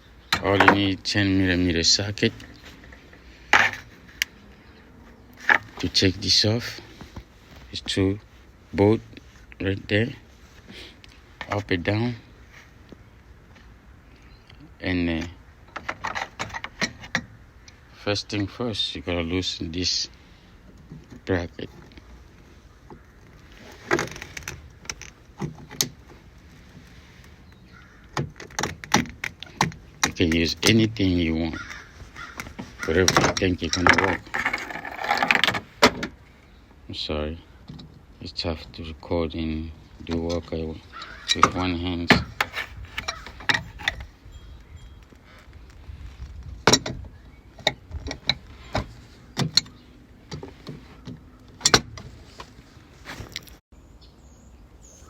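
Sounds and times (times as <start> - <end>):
hand tools clinking on metal: 40.0 - 45.3.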